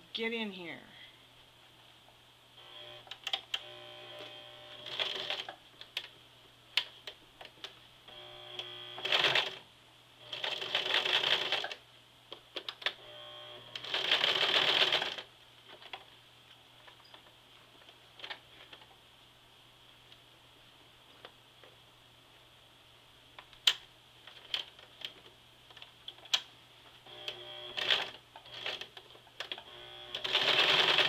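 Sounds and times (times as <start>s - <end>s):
sewing machine stitching: 9.0s - 9.6s, 13.5s - 15.2s, 29.5s - 31.0s.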